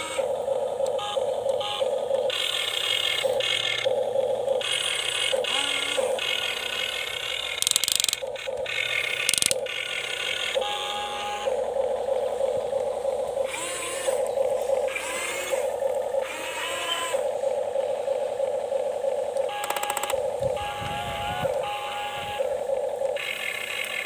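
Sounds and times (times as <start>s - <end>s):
small electric motors whirring: 0.0s - 24.0s
rapid clicking: 0.2s - 10.6s, 17.2s - 24.0s.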